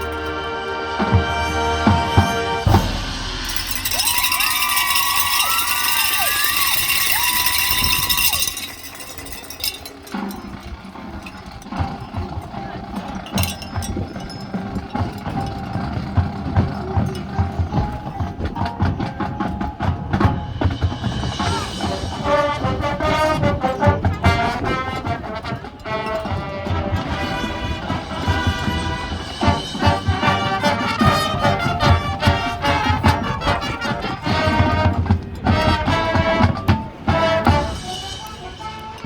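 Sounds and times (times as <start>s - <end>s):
brass chords: 0.0s - 9.8s, 21.3s - 39.0s
drum strikes: 1.0s - 10.8s.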